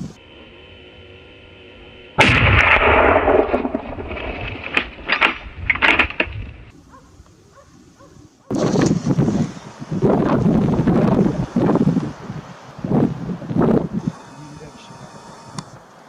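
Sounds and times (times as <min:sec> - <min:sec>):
gunshot cracks: 0:02.2 - 0:05.4.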